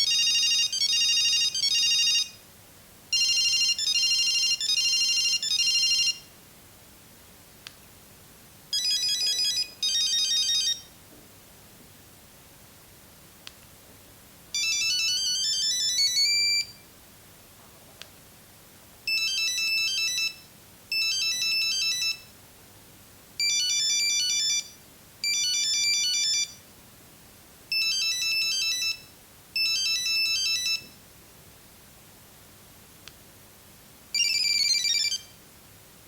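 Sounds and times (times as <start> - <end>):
phone ringtone beeps: 0.0 - 2.4, 3.2 - 6.3, 8.8 - 10.9, 14.6 - 16.8, 19.1 - 22.3, 23.4 - 26.6, 27.7 - 30.9, 34.2 - 35.4.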